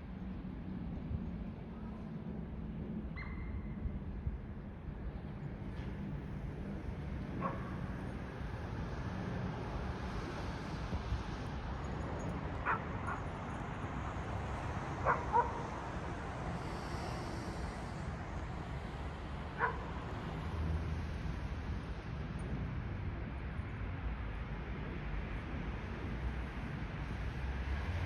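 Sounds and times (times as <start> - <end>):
city background hum: 0.0 - 28.0
dog barking: 12.6 - 13.2, 15.0 - 15.6, 19.6 - 19.9.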